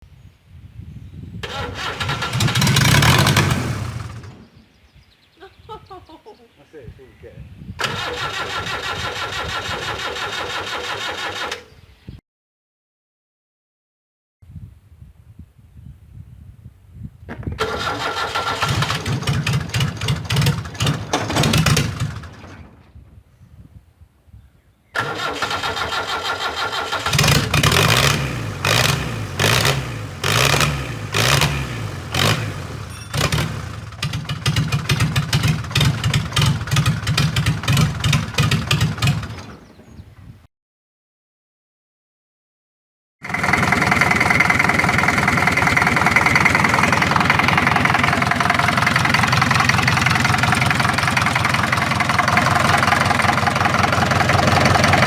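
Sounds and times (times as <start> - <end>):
engine cranking and running: 1.4 - 4.6, 7.8 - 11.7, 17.6 - 22.9, 25.0 - 39.7, 43.2 - 55.0.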